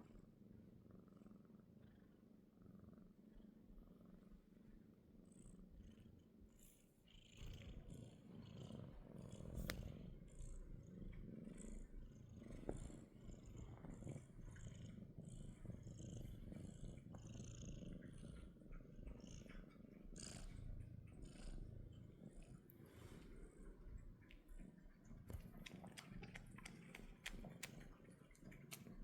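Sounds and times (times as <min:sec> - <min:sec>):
cat purring: 0:00.0 - 0:29.0
faint clicks: 0:09.4 - 0:10.0, 0:24.2 - 0:29.0.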